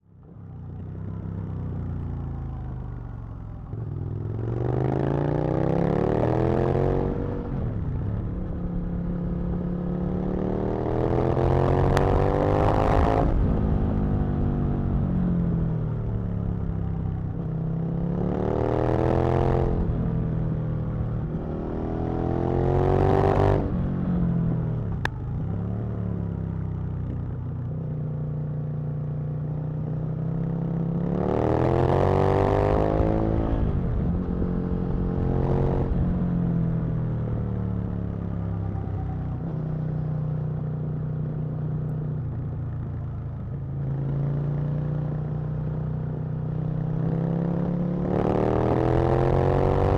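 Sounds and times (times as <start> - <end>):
motorcycle engine revving: 29.4 - 49.9.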